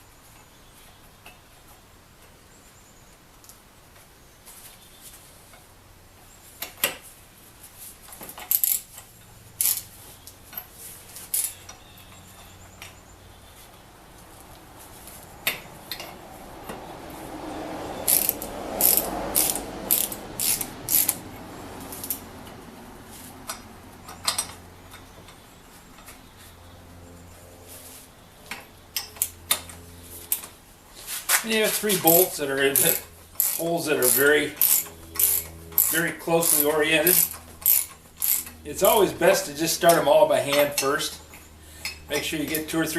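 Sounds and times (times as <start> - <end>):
metallic clicks of hardware and tools: 8.1 - 9.9, 23.4 - 25.4, 32.0 - 38.6.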